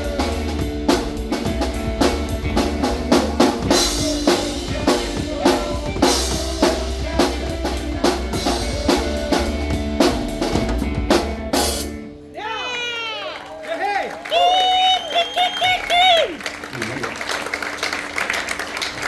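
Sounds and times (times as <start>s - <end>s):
live rock band playing: 0.0s - 13.2s.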